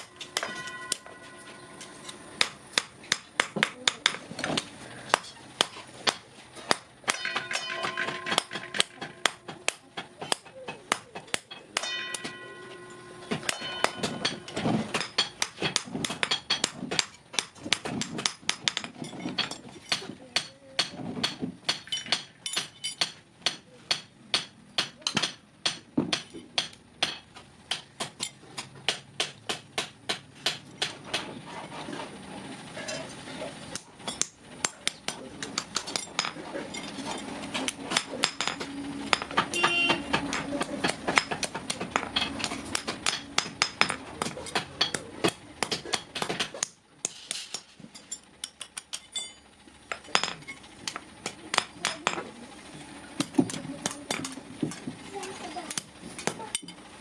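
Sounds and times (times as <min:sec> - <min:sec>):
hammer beating sheet iron: 0:02.4 - 0:27.9, 0:37.6 - 0:47.7.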